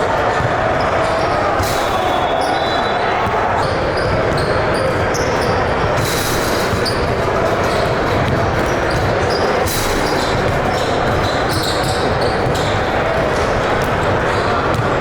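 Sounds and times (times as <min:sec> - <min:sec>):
echoing crowd voices: 0:00.0 - 0:15.0
basketball bouncing on court: 0:00.2 - 0:15.0
high-pitched shoe squeaks: 0:08.6 - 0:13.0.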